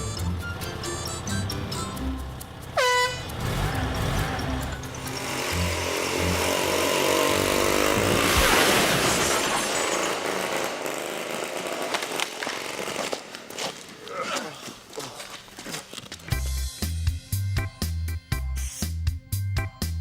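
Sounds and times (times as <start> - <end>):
motorcycle engine running: 0.0 - 11.8.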